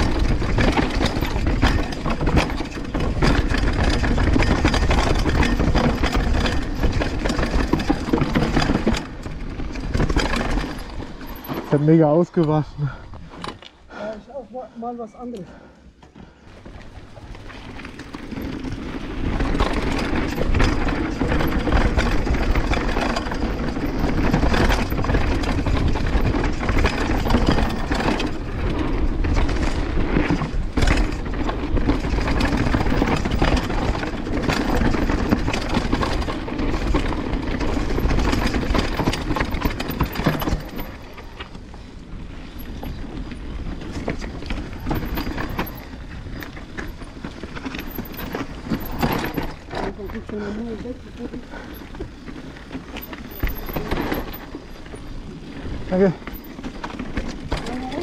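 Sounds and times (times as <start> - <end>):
clatter of knocks: 0.0 - 11.8
rattling bike chain: 0.0 - 15.7, 16.4 - 58.0
bike tyres rolling on dirt: 0.0 - 58.0.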